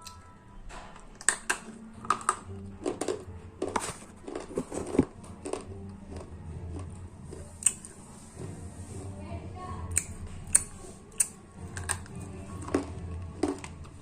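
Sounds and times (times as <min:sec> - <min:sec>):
pencils crunched between teeth: 0:01.1 - 0:06.9.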